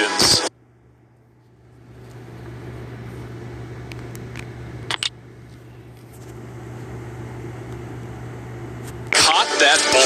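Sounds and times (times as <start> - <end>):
steady low hum: 0.2 - 10.0.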